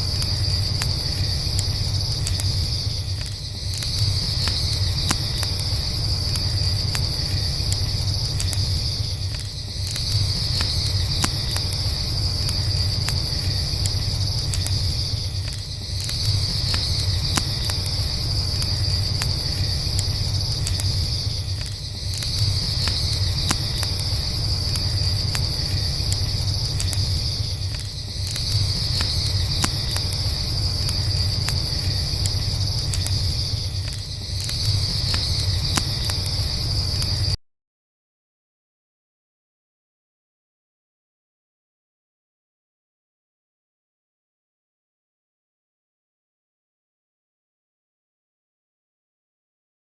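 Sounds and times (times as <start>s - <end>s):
crickets chirping: 0.0s - 37.4s
faint campfire crackles: 0.0s - 37.4s.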